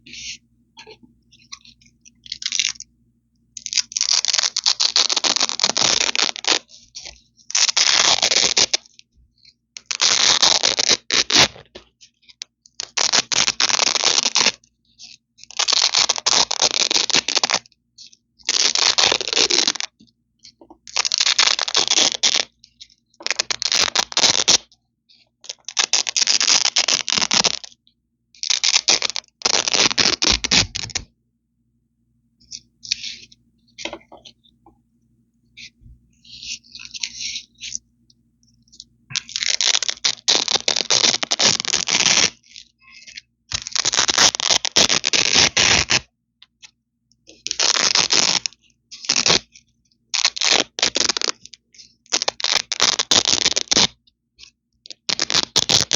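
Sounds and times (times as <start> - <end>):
velcro strips ripping: 0.8 - 2.8, 3.6 - 9.0, 9.8 - 11.8, 12.4 - 20.0, 20.9 - 24.7, 25.4 - 27.8, 28.4 - 31.1, 35.6 - 37.8, 38.7 - 46.1, 47.3 - 55.9.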